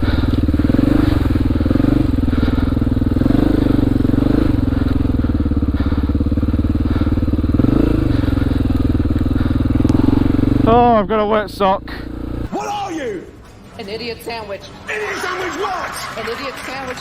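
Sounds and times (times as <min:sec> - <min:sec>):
motorcycle engine running at low revs: 0:00.0 - 0:12.5.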